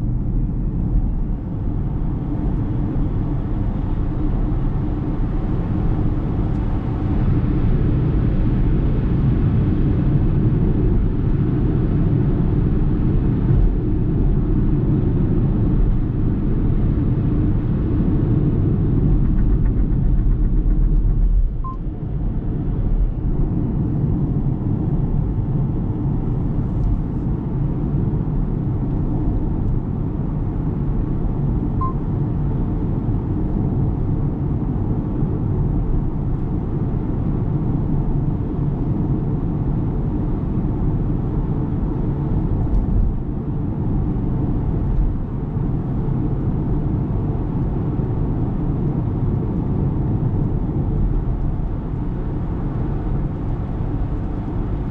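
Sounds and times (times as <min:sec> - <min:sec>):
road and tyre rumble: 0:00.0 - 0:54.9.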